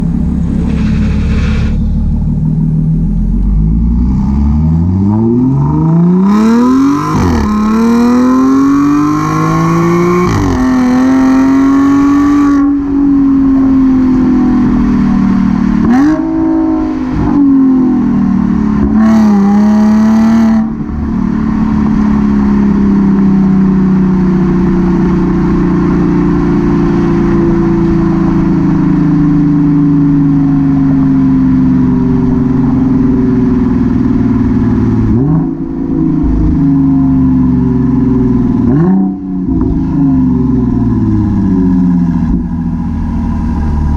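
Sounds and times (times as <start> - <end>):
car engine accelerating hard: 0.0 - 43.9.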